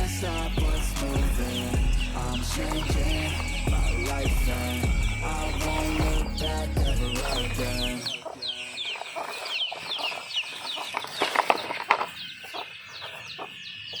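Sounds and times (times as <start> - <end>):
background music: 0.0 - 8.6
birds chirping: 0.0 - 14.0.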